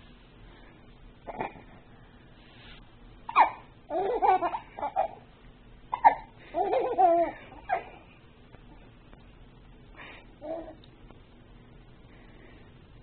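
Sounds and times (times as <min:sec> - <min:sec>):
child giggling: 0:06.0 - 0:08.1.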